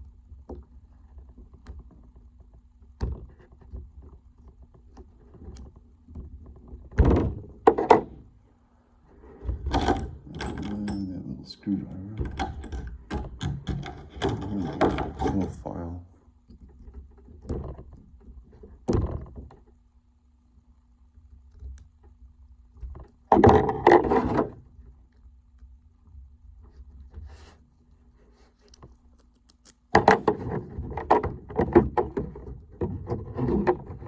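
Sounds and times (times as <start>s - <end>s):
metal tools scraping: 9.7s - 11.7s, 12.3s - 15.8s.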